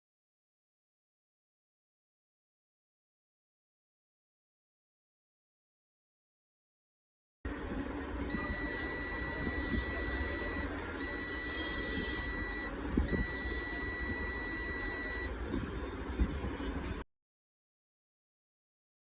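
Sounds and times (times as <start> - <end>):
background hiss and hum: 7.5 - 17.0
electronic beeper tone: 8.2 - 16.0.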